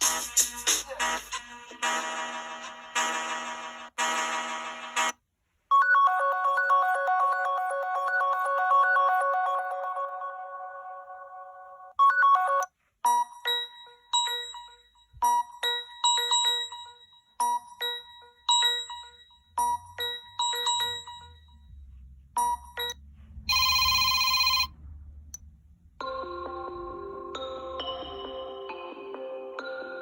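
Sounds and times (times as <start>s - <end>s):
sustained ringtone melody: 5.8s - 17.0s, 17.6s - 21.8s, 22.4s - 24.7s
bell-like ringtone melody: 12.0s - 21.7s, 22.4s - 24.7s.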